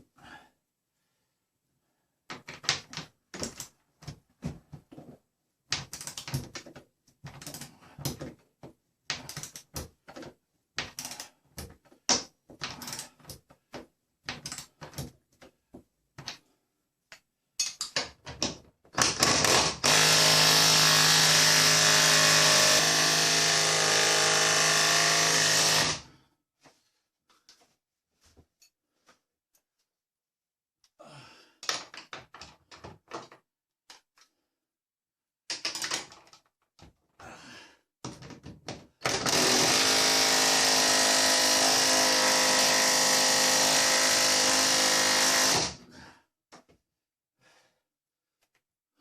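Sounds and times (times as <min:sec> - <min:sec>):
hand tools clicking and knocking: 0:02.3 - 0:05.1, 0:05.7 - 0:15.5, 0:17.1 - 0:26.0, 0:35.5 - 0:37.0
power tool motor running: 0:19.2 - 0:26.0, 0:39.1 - 0:45.7.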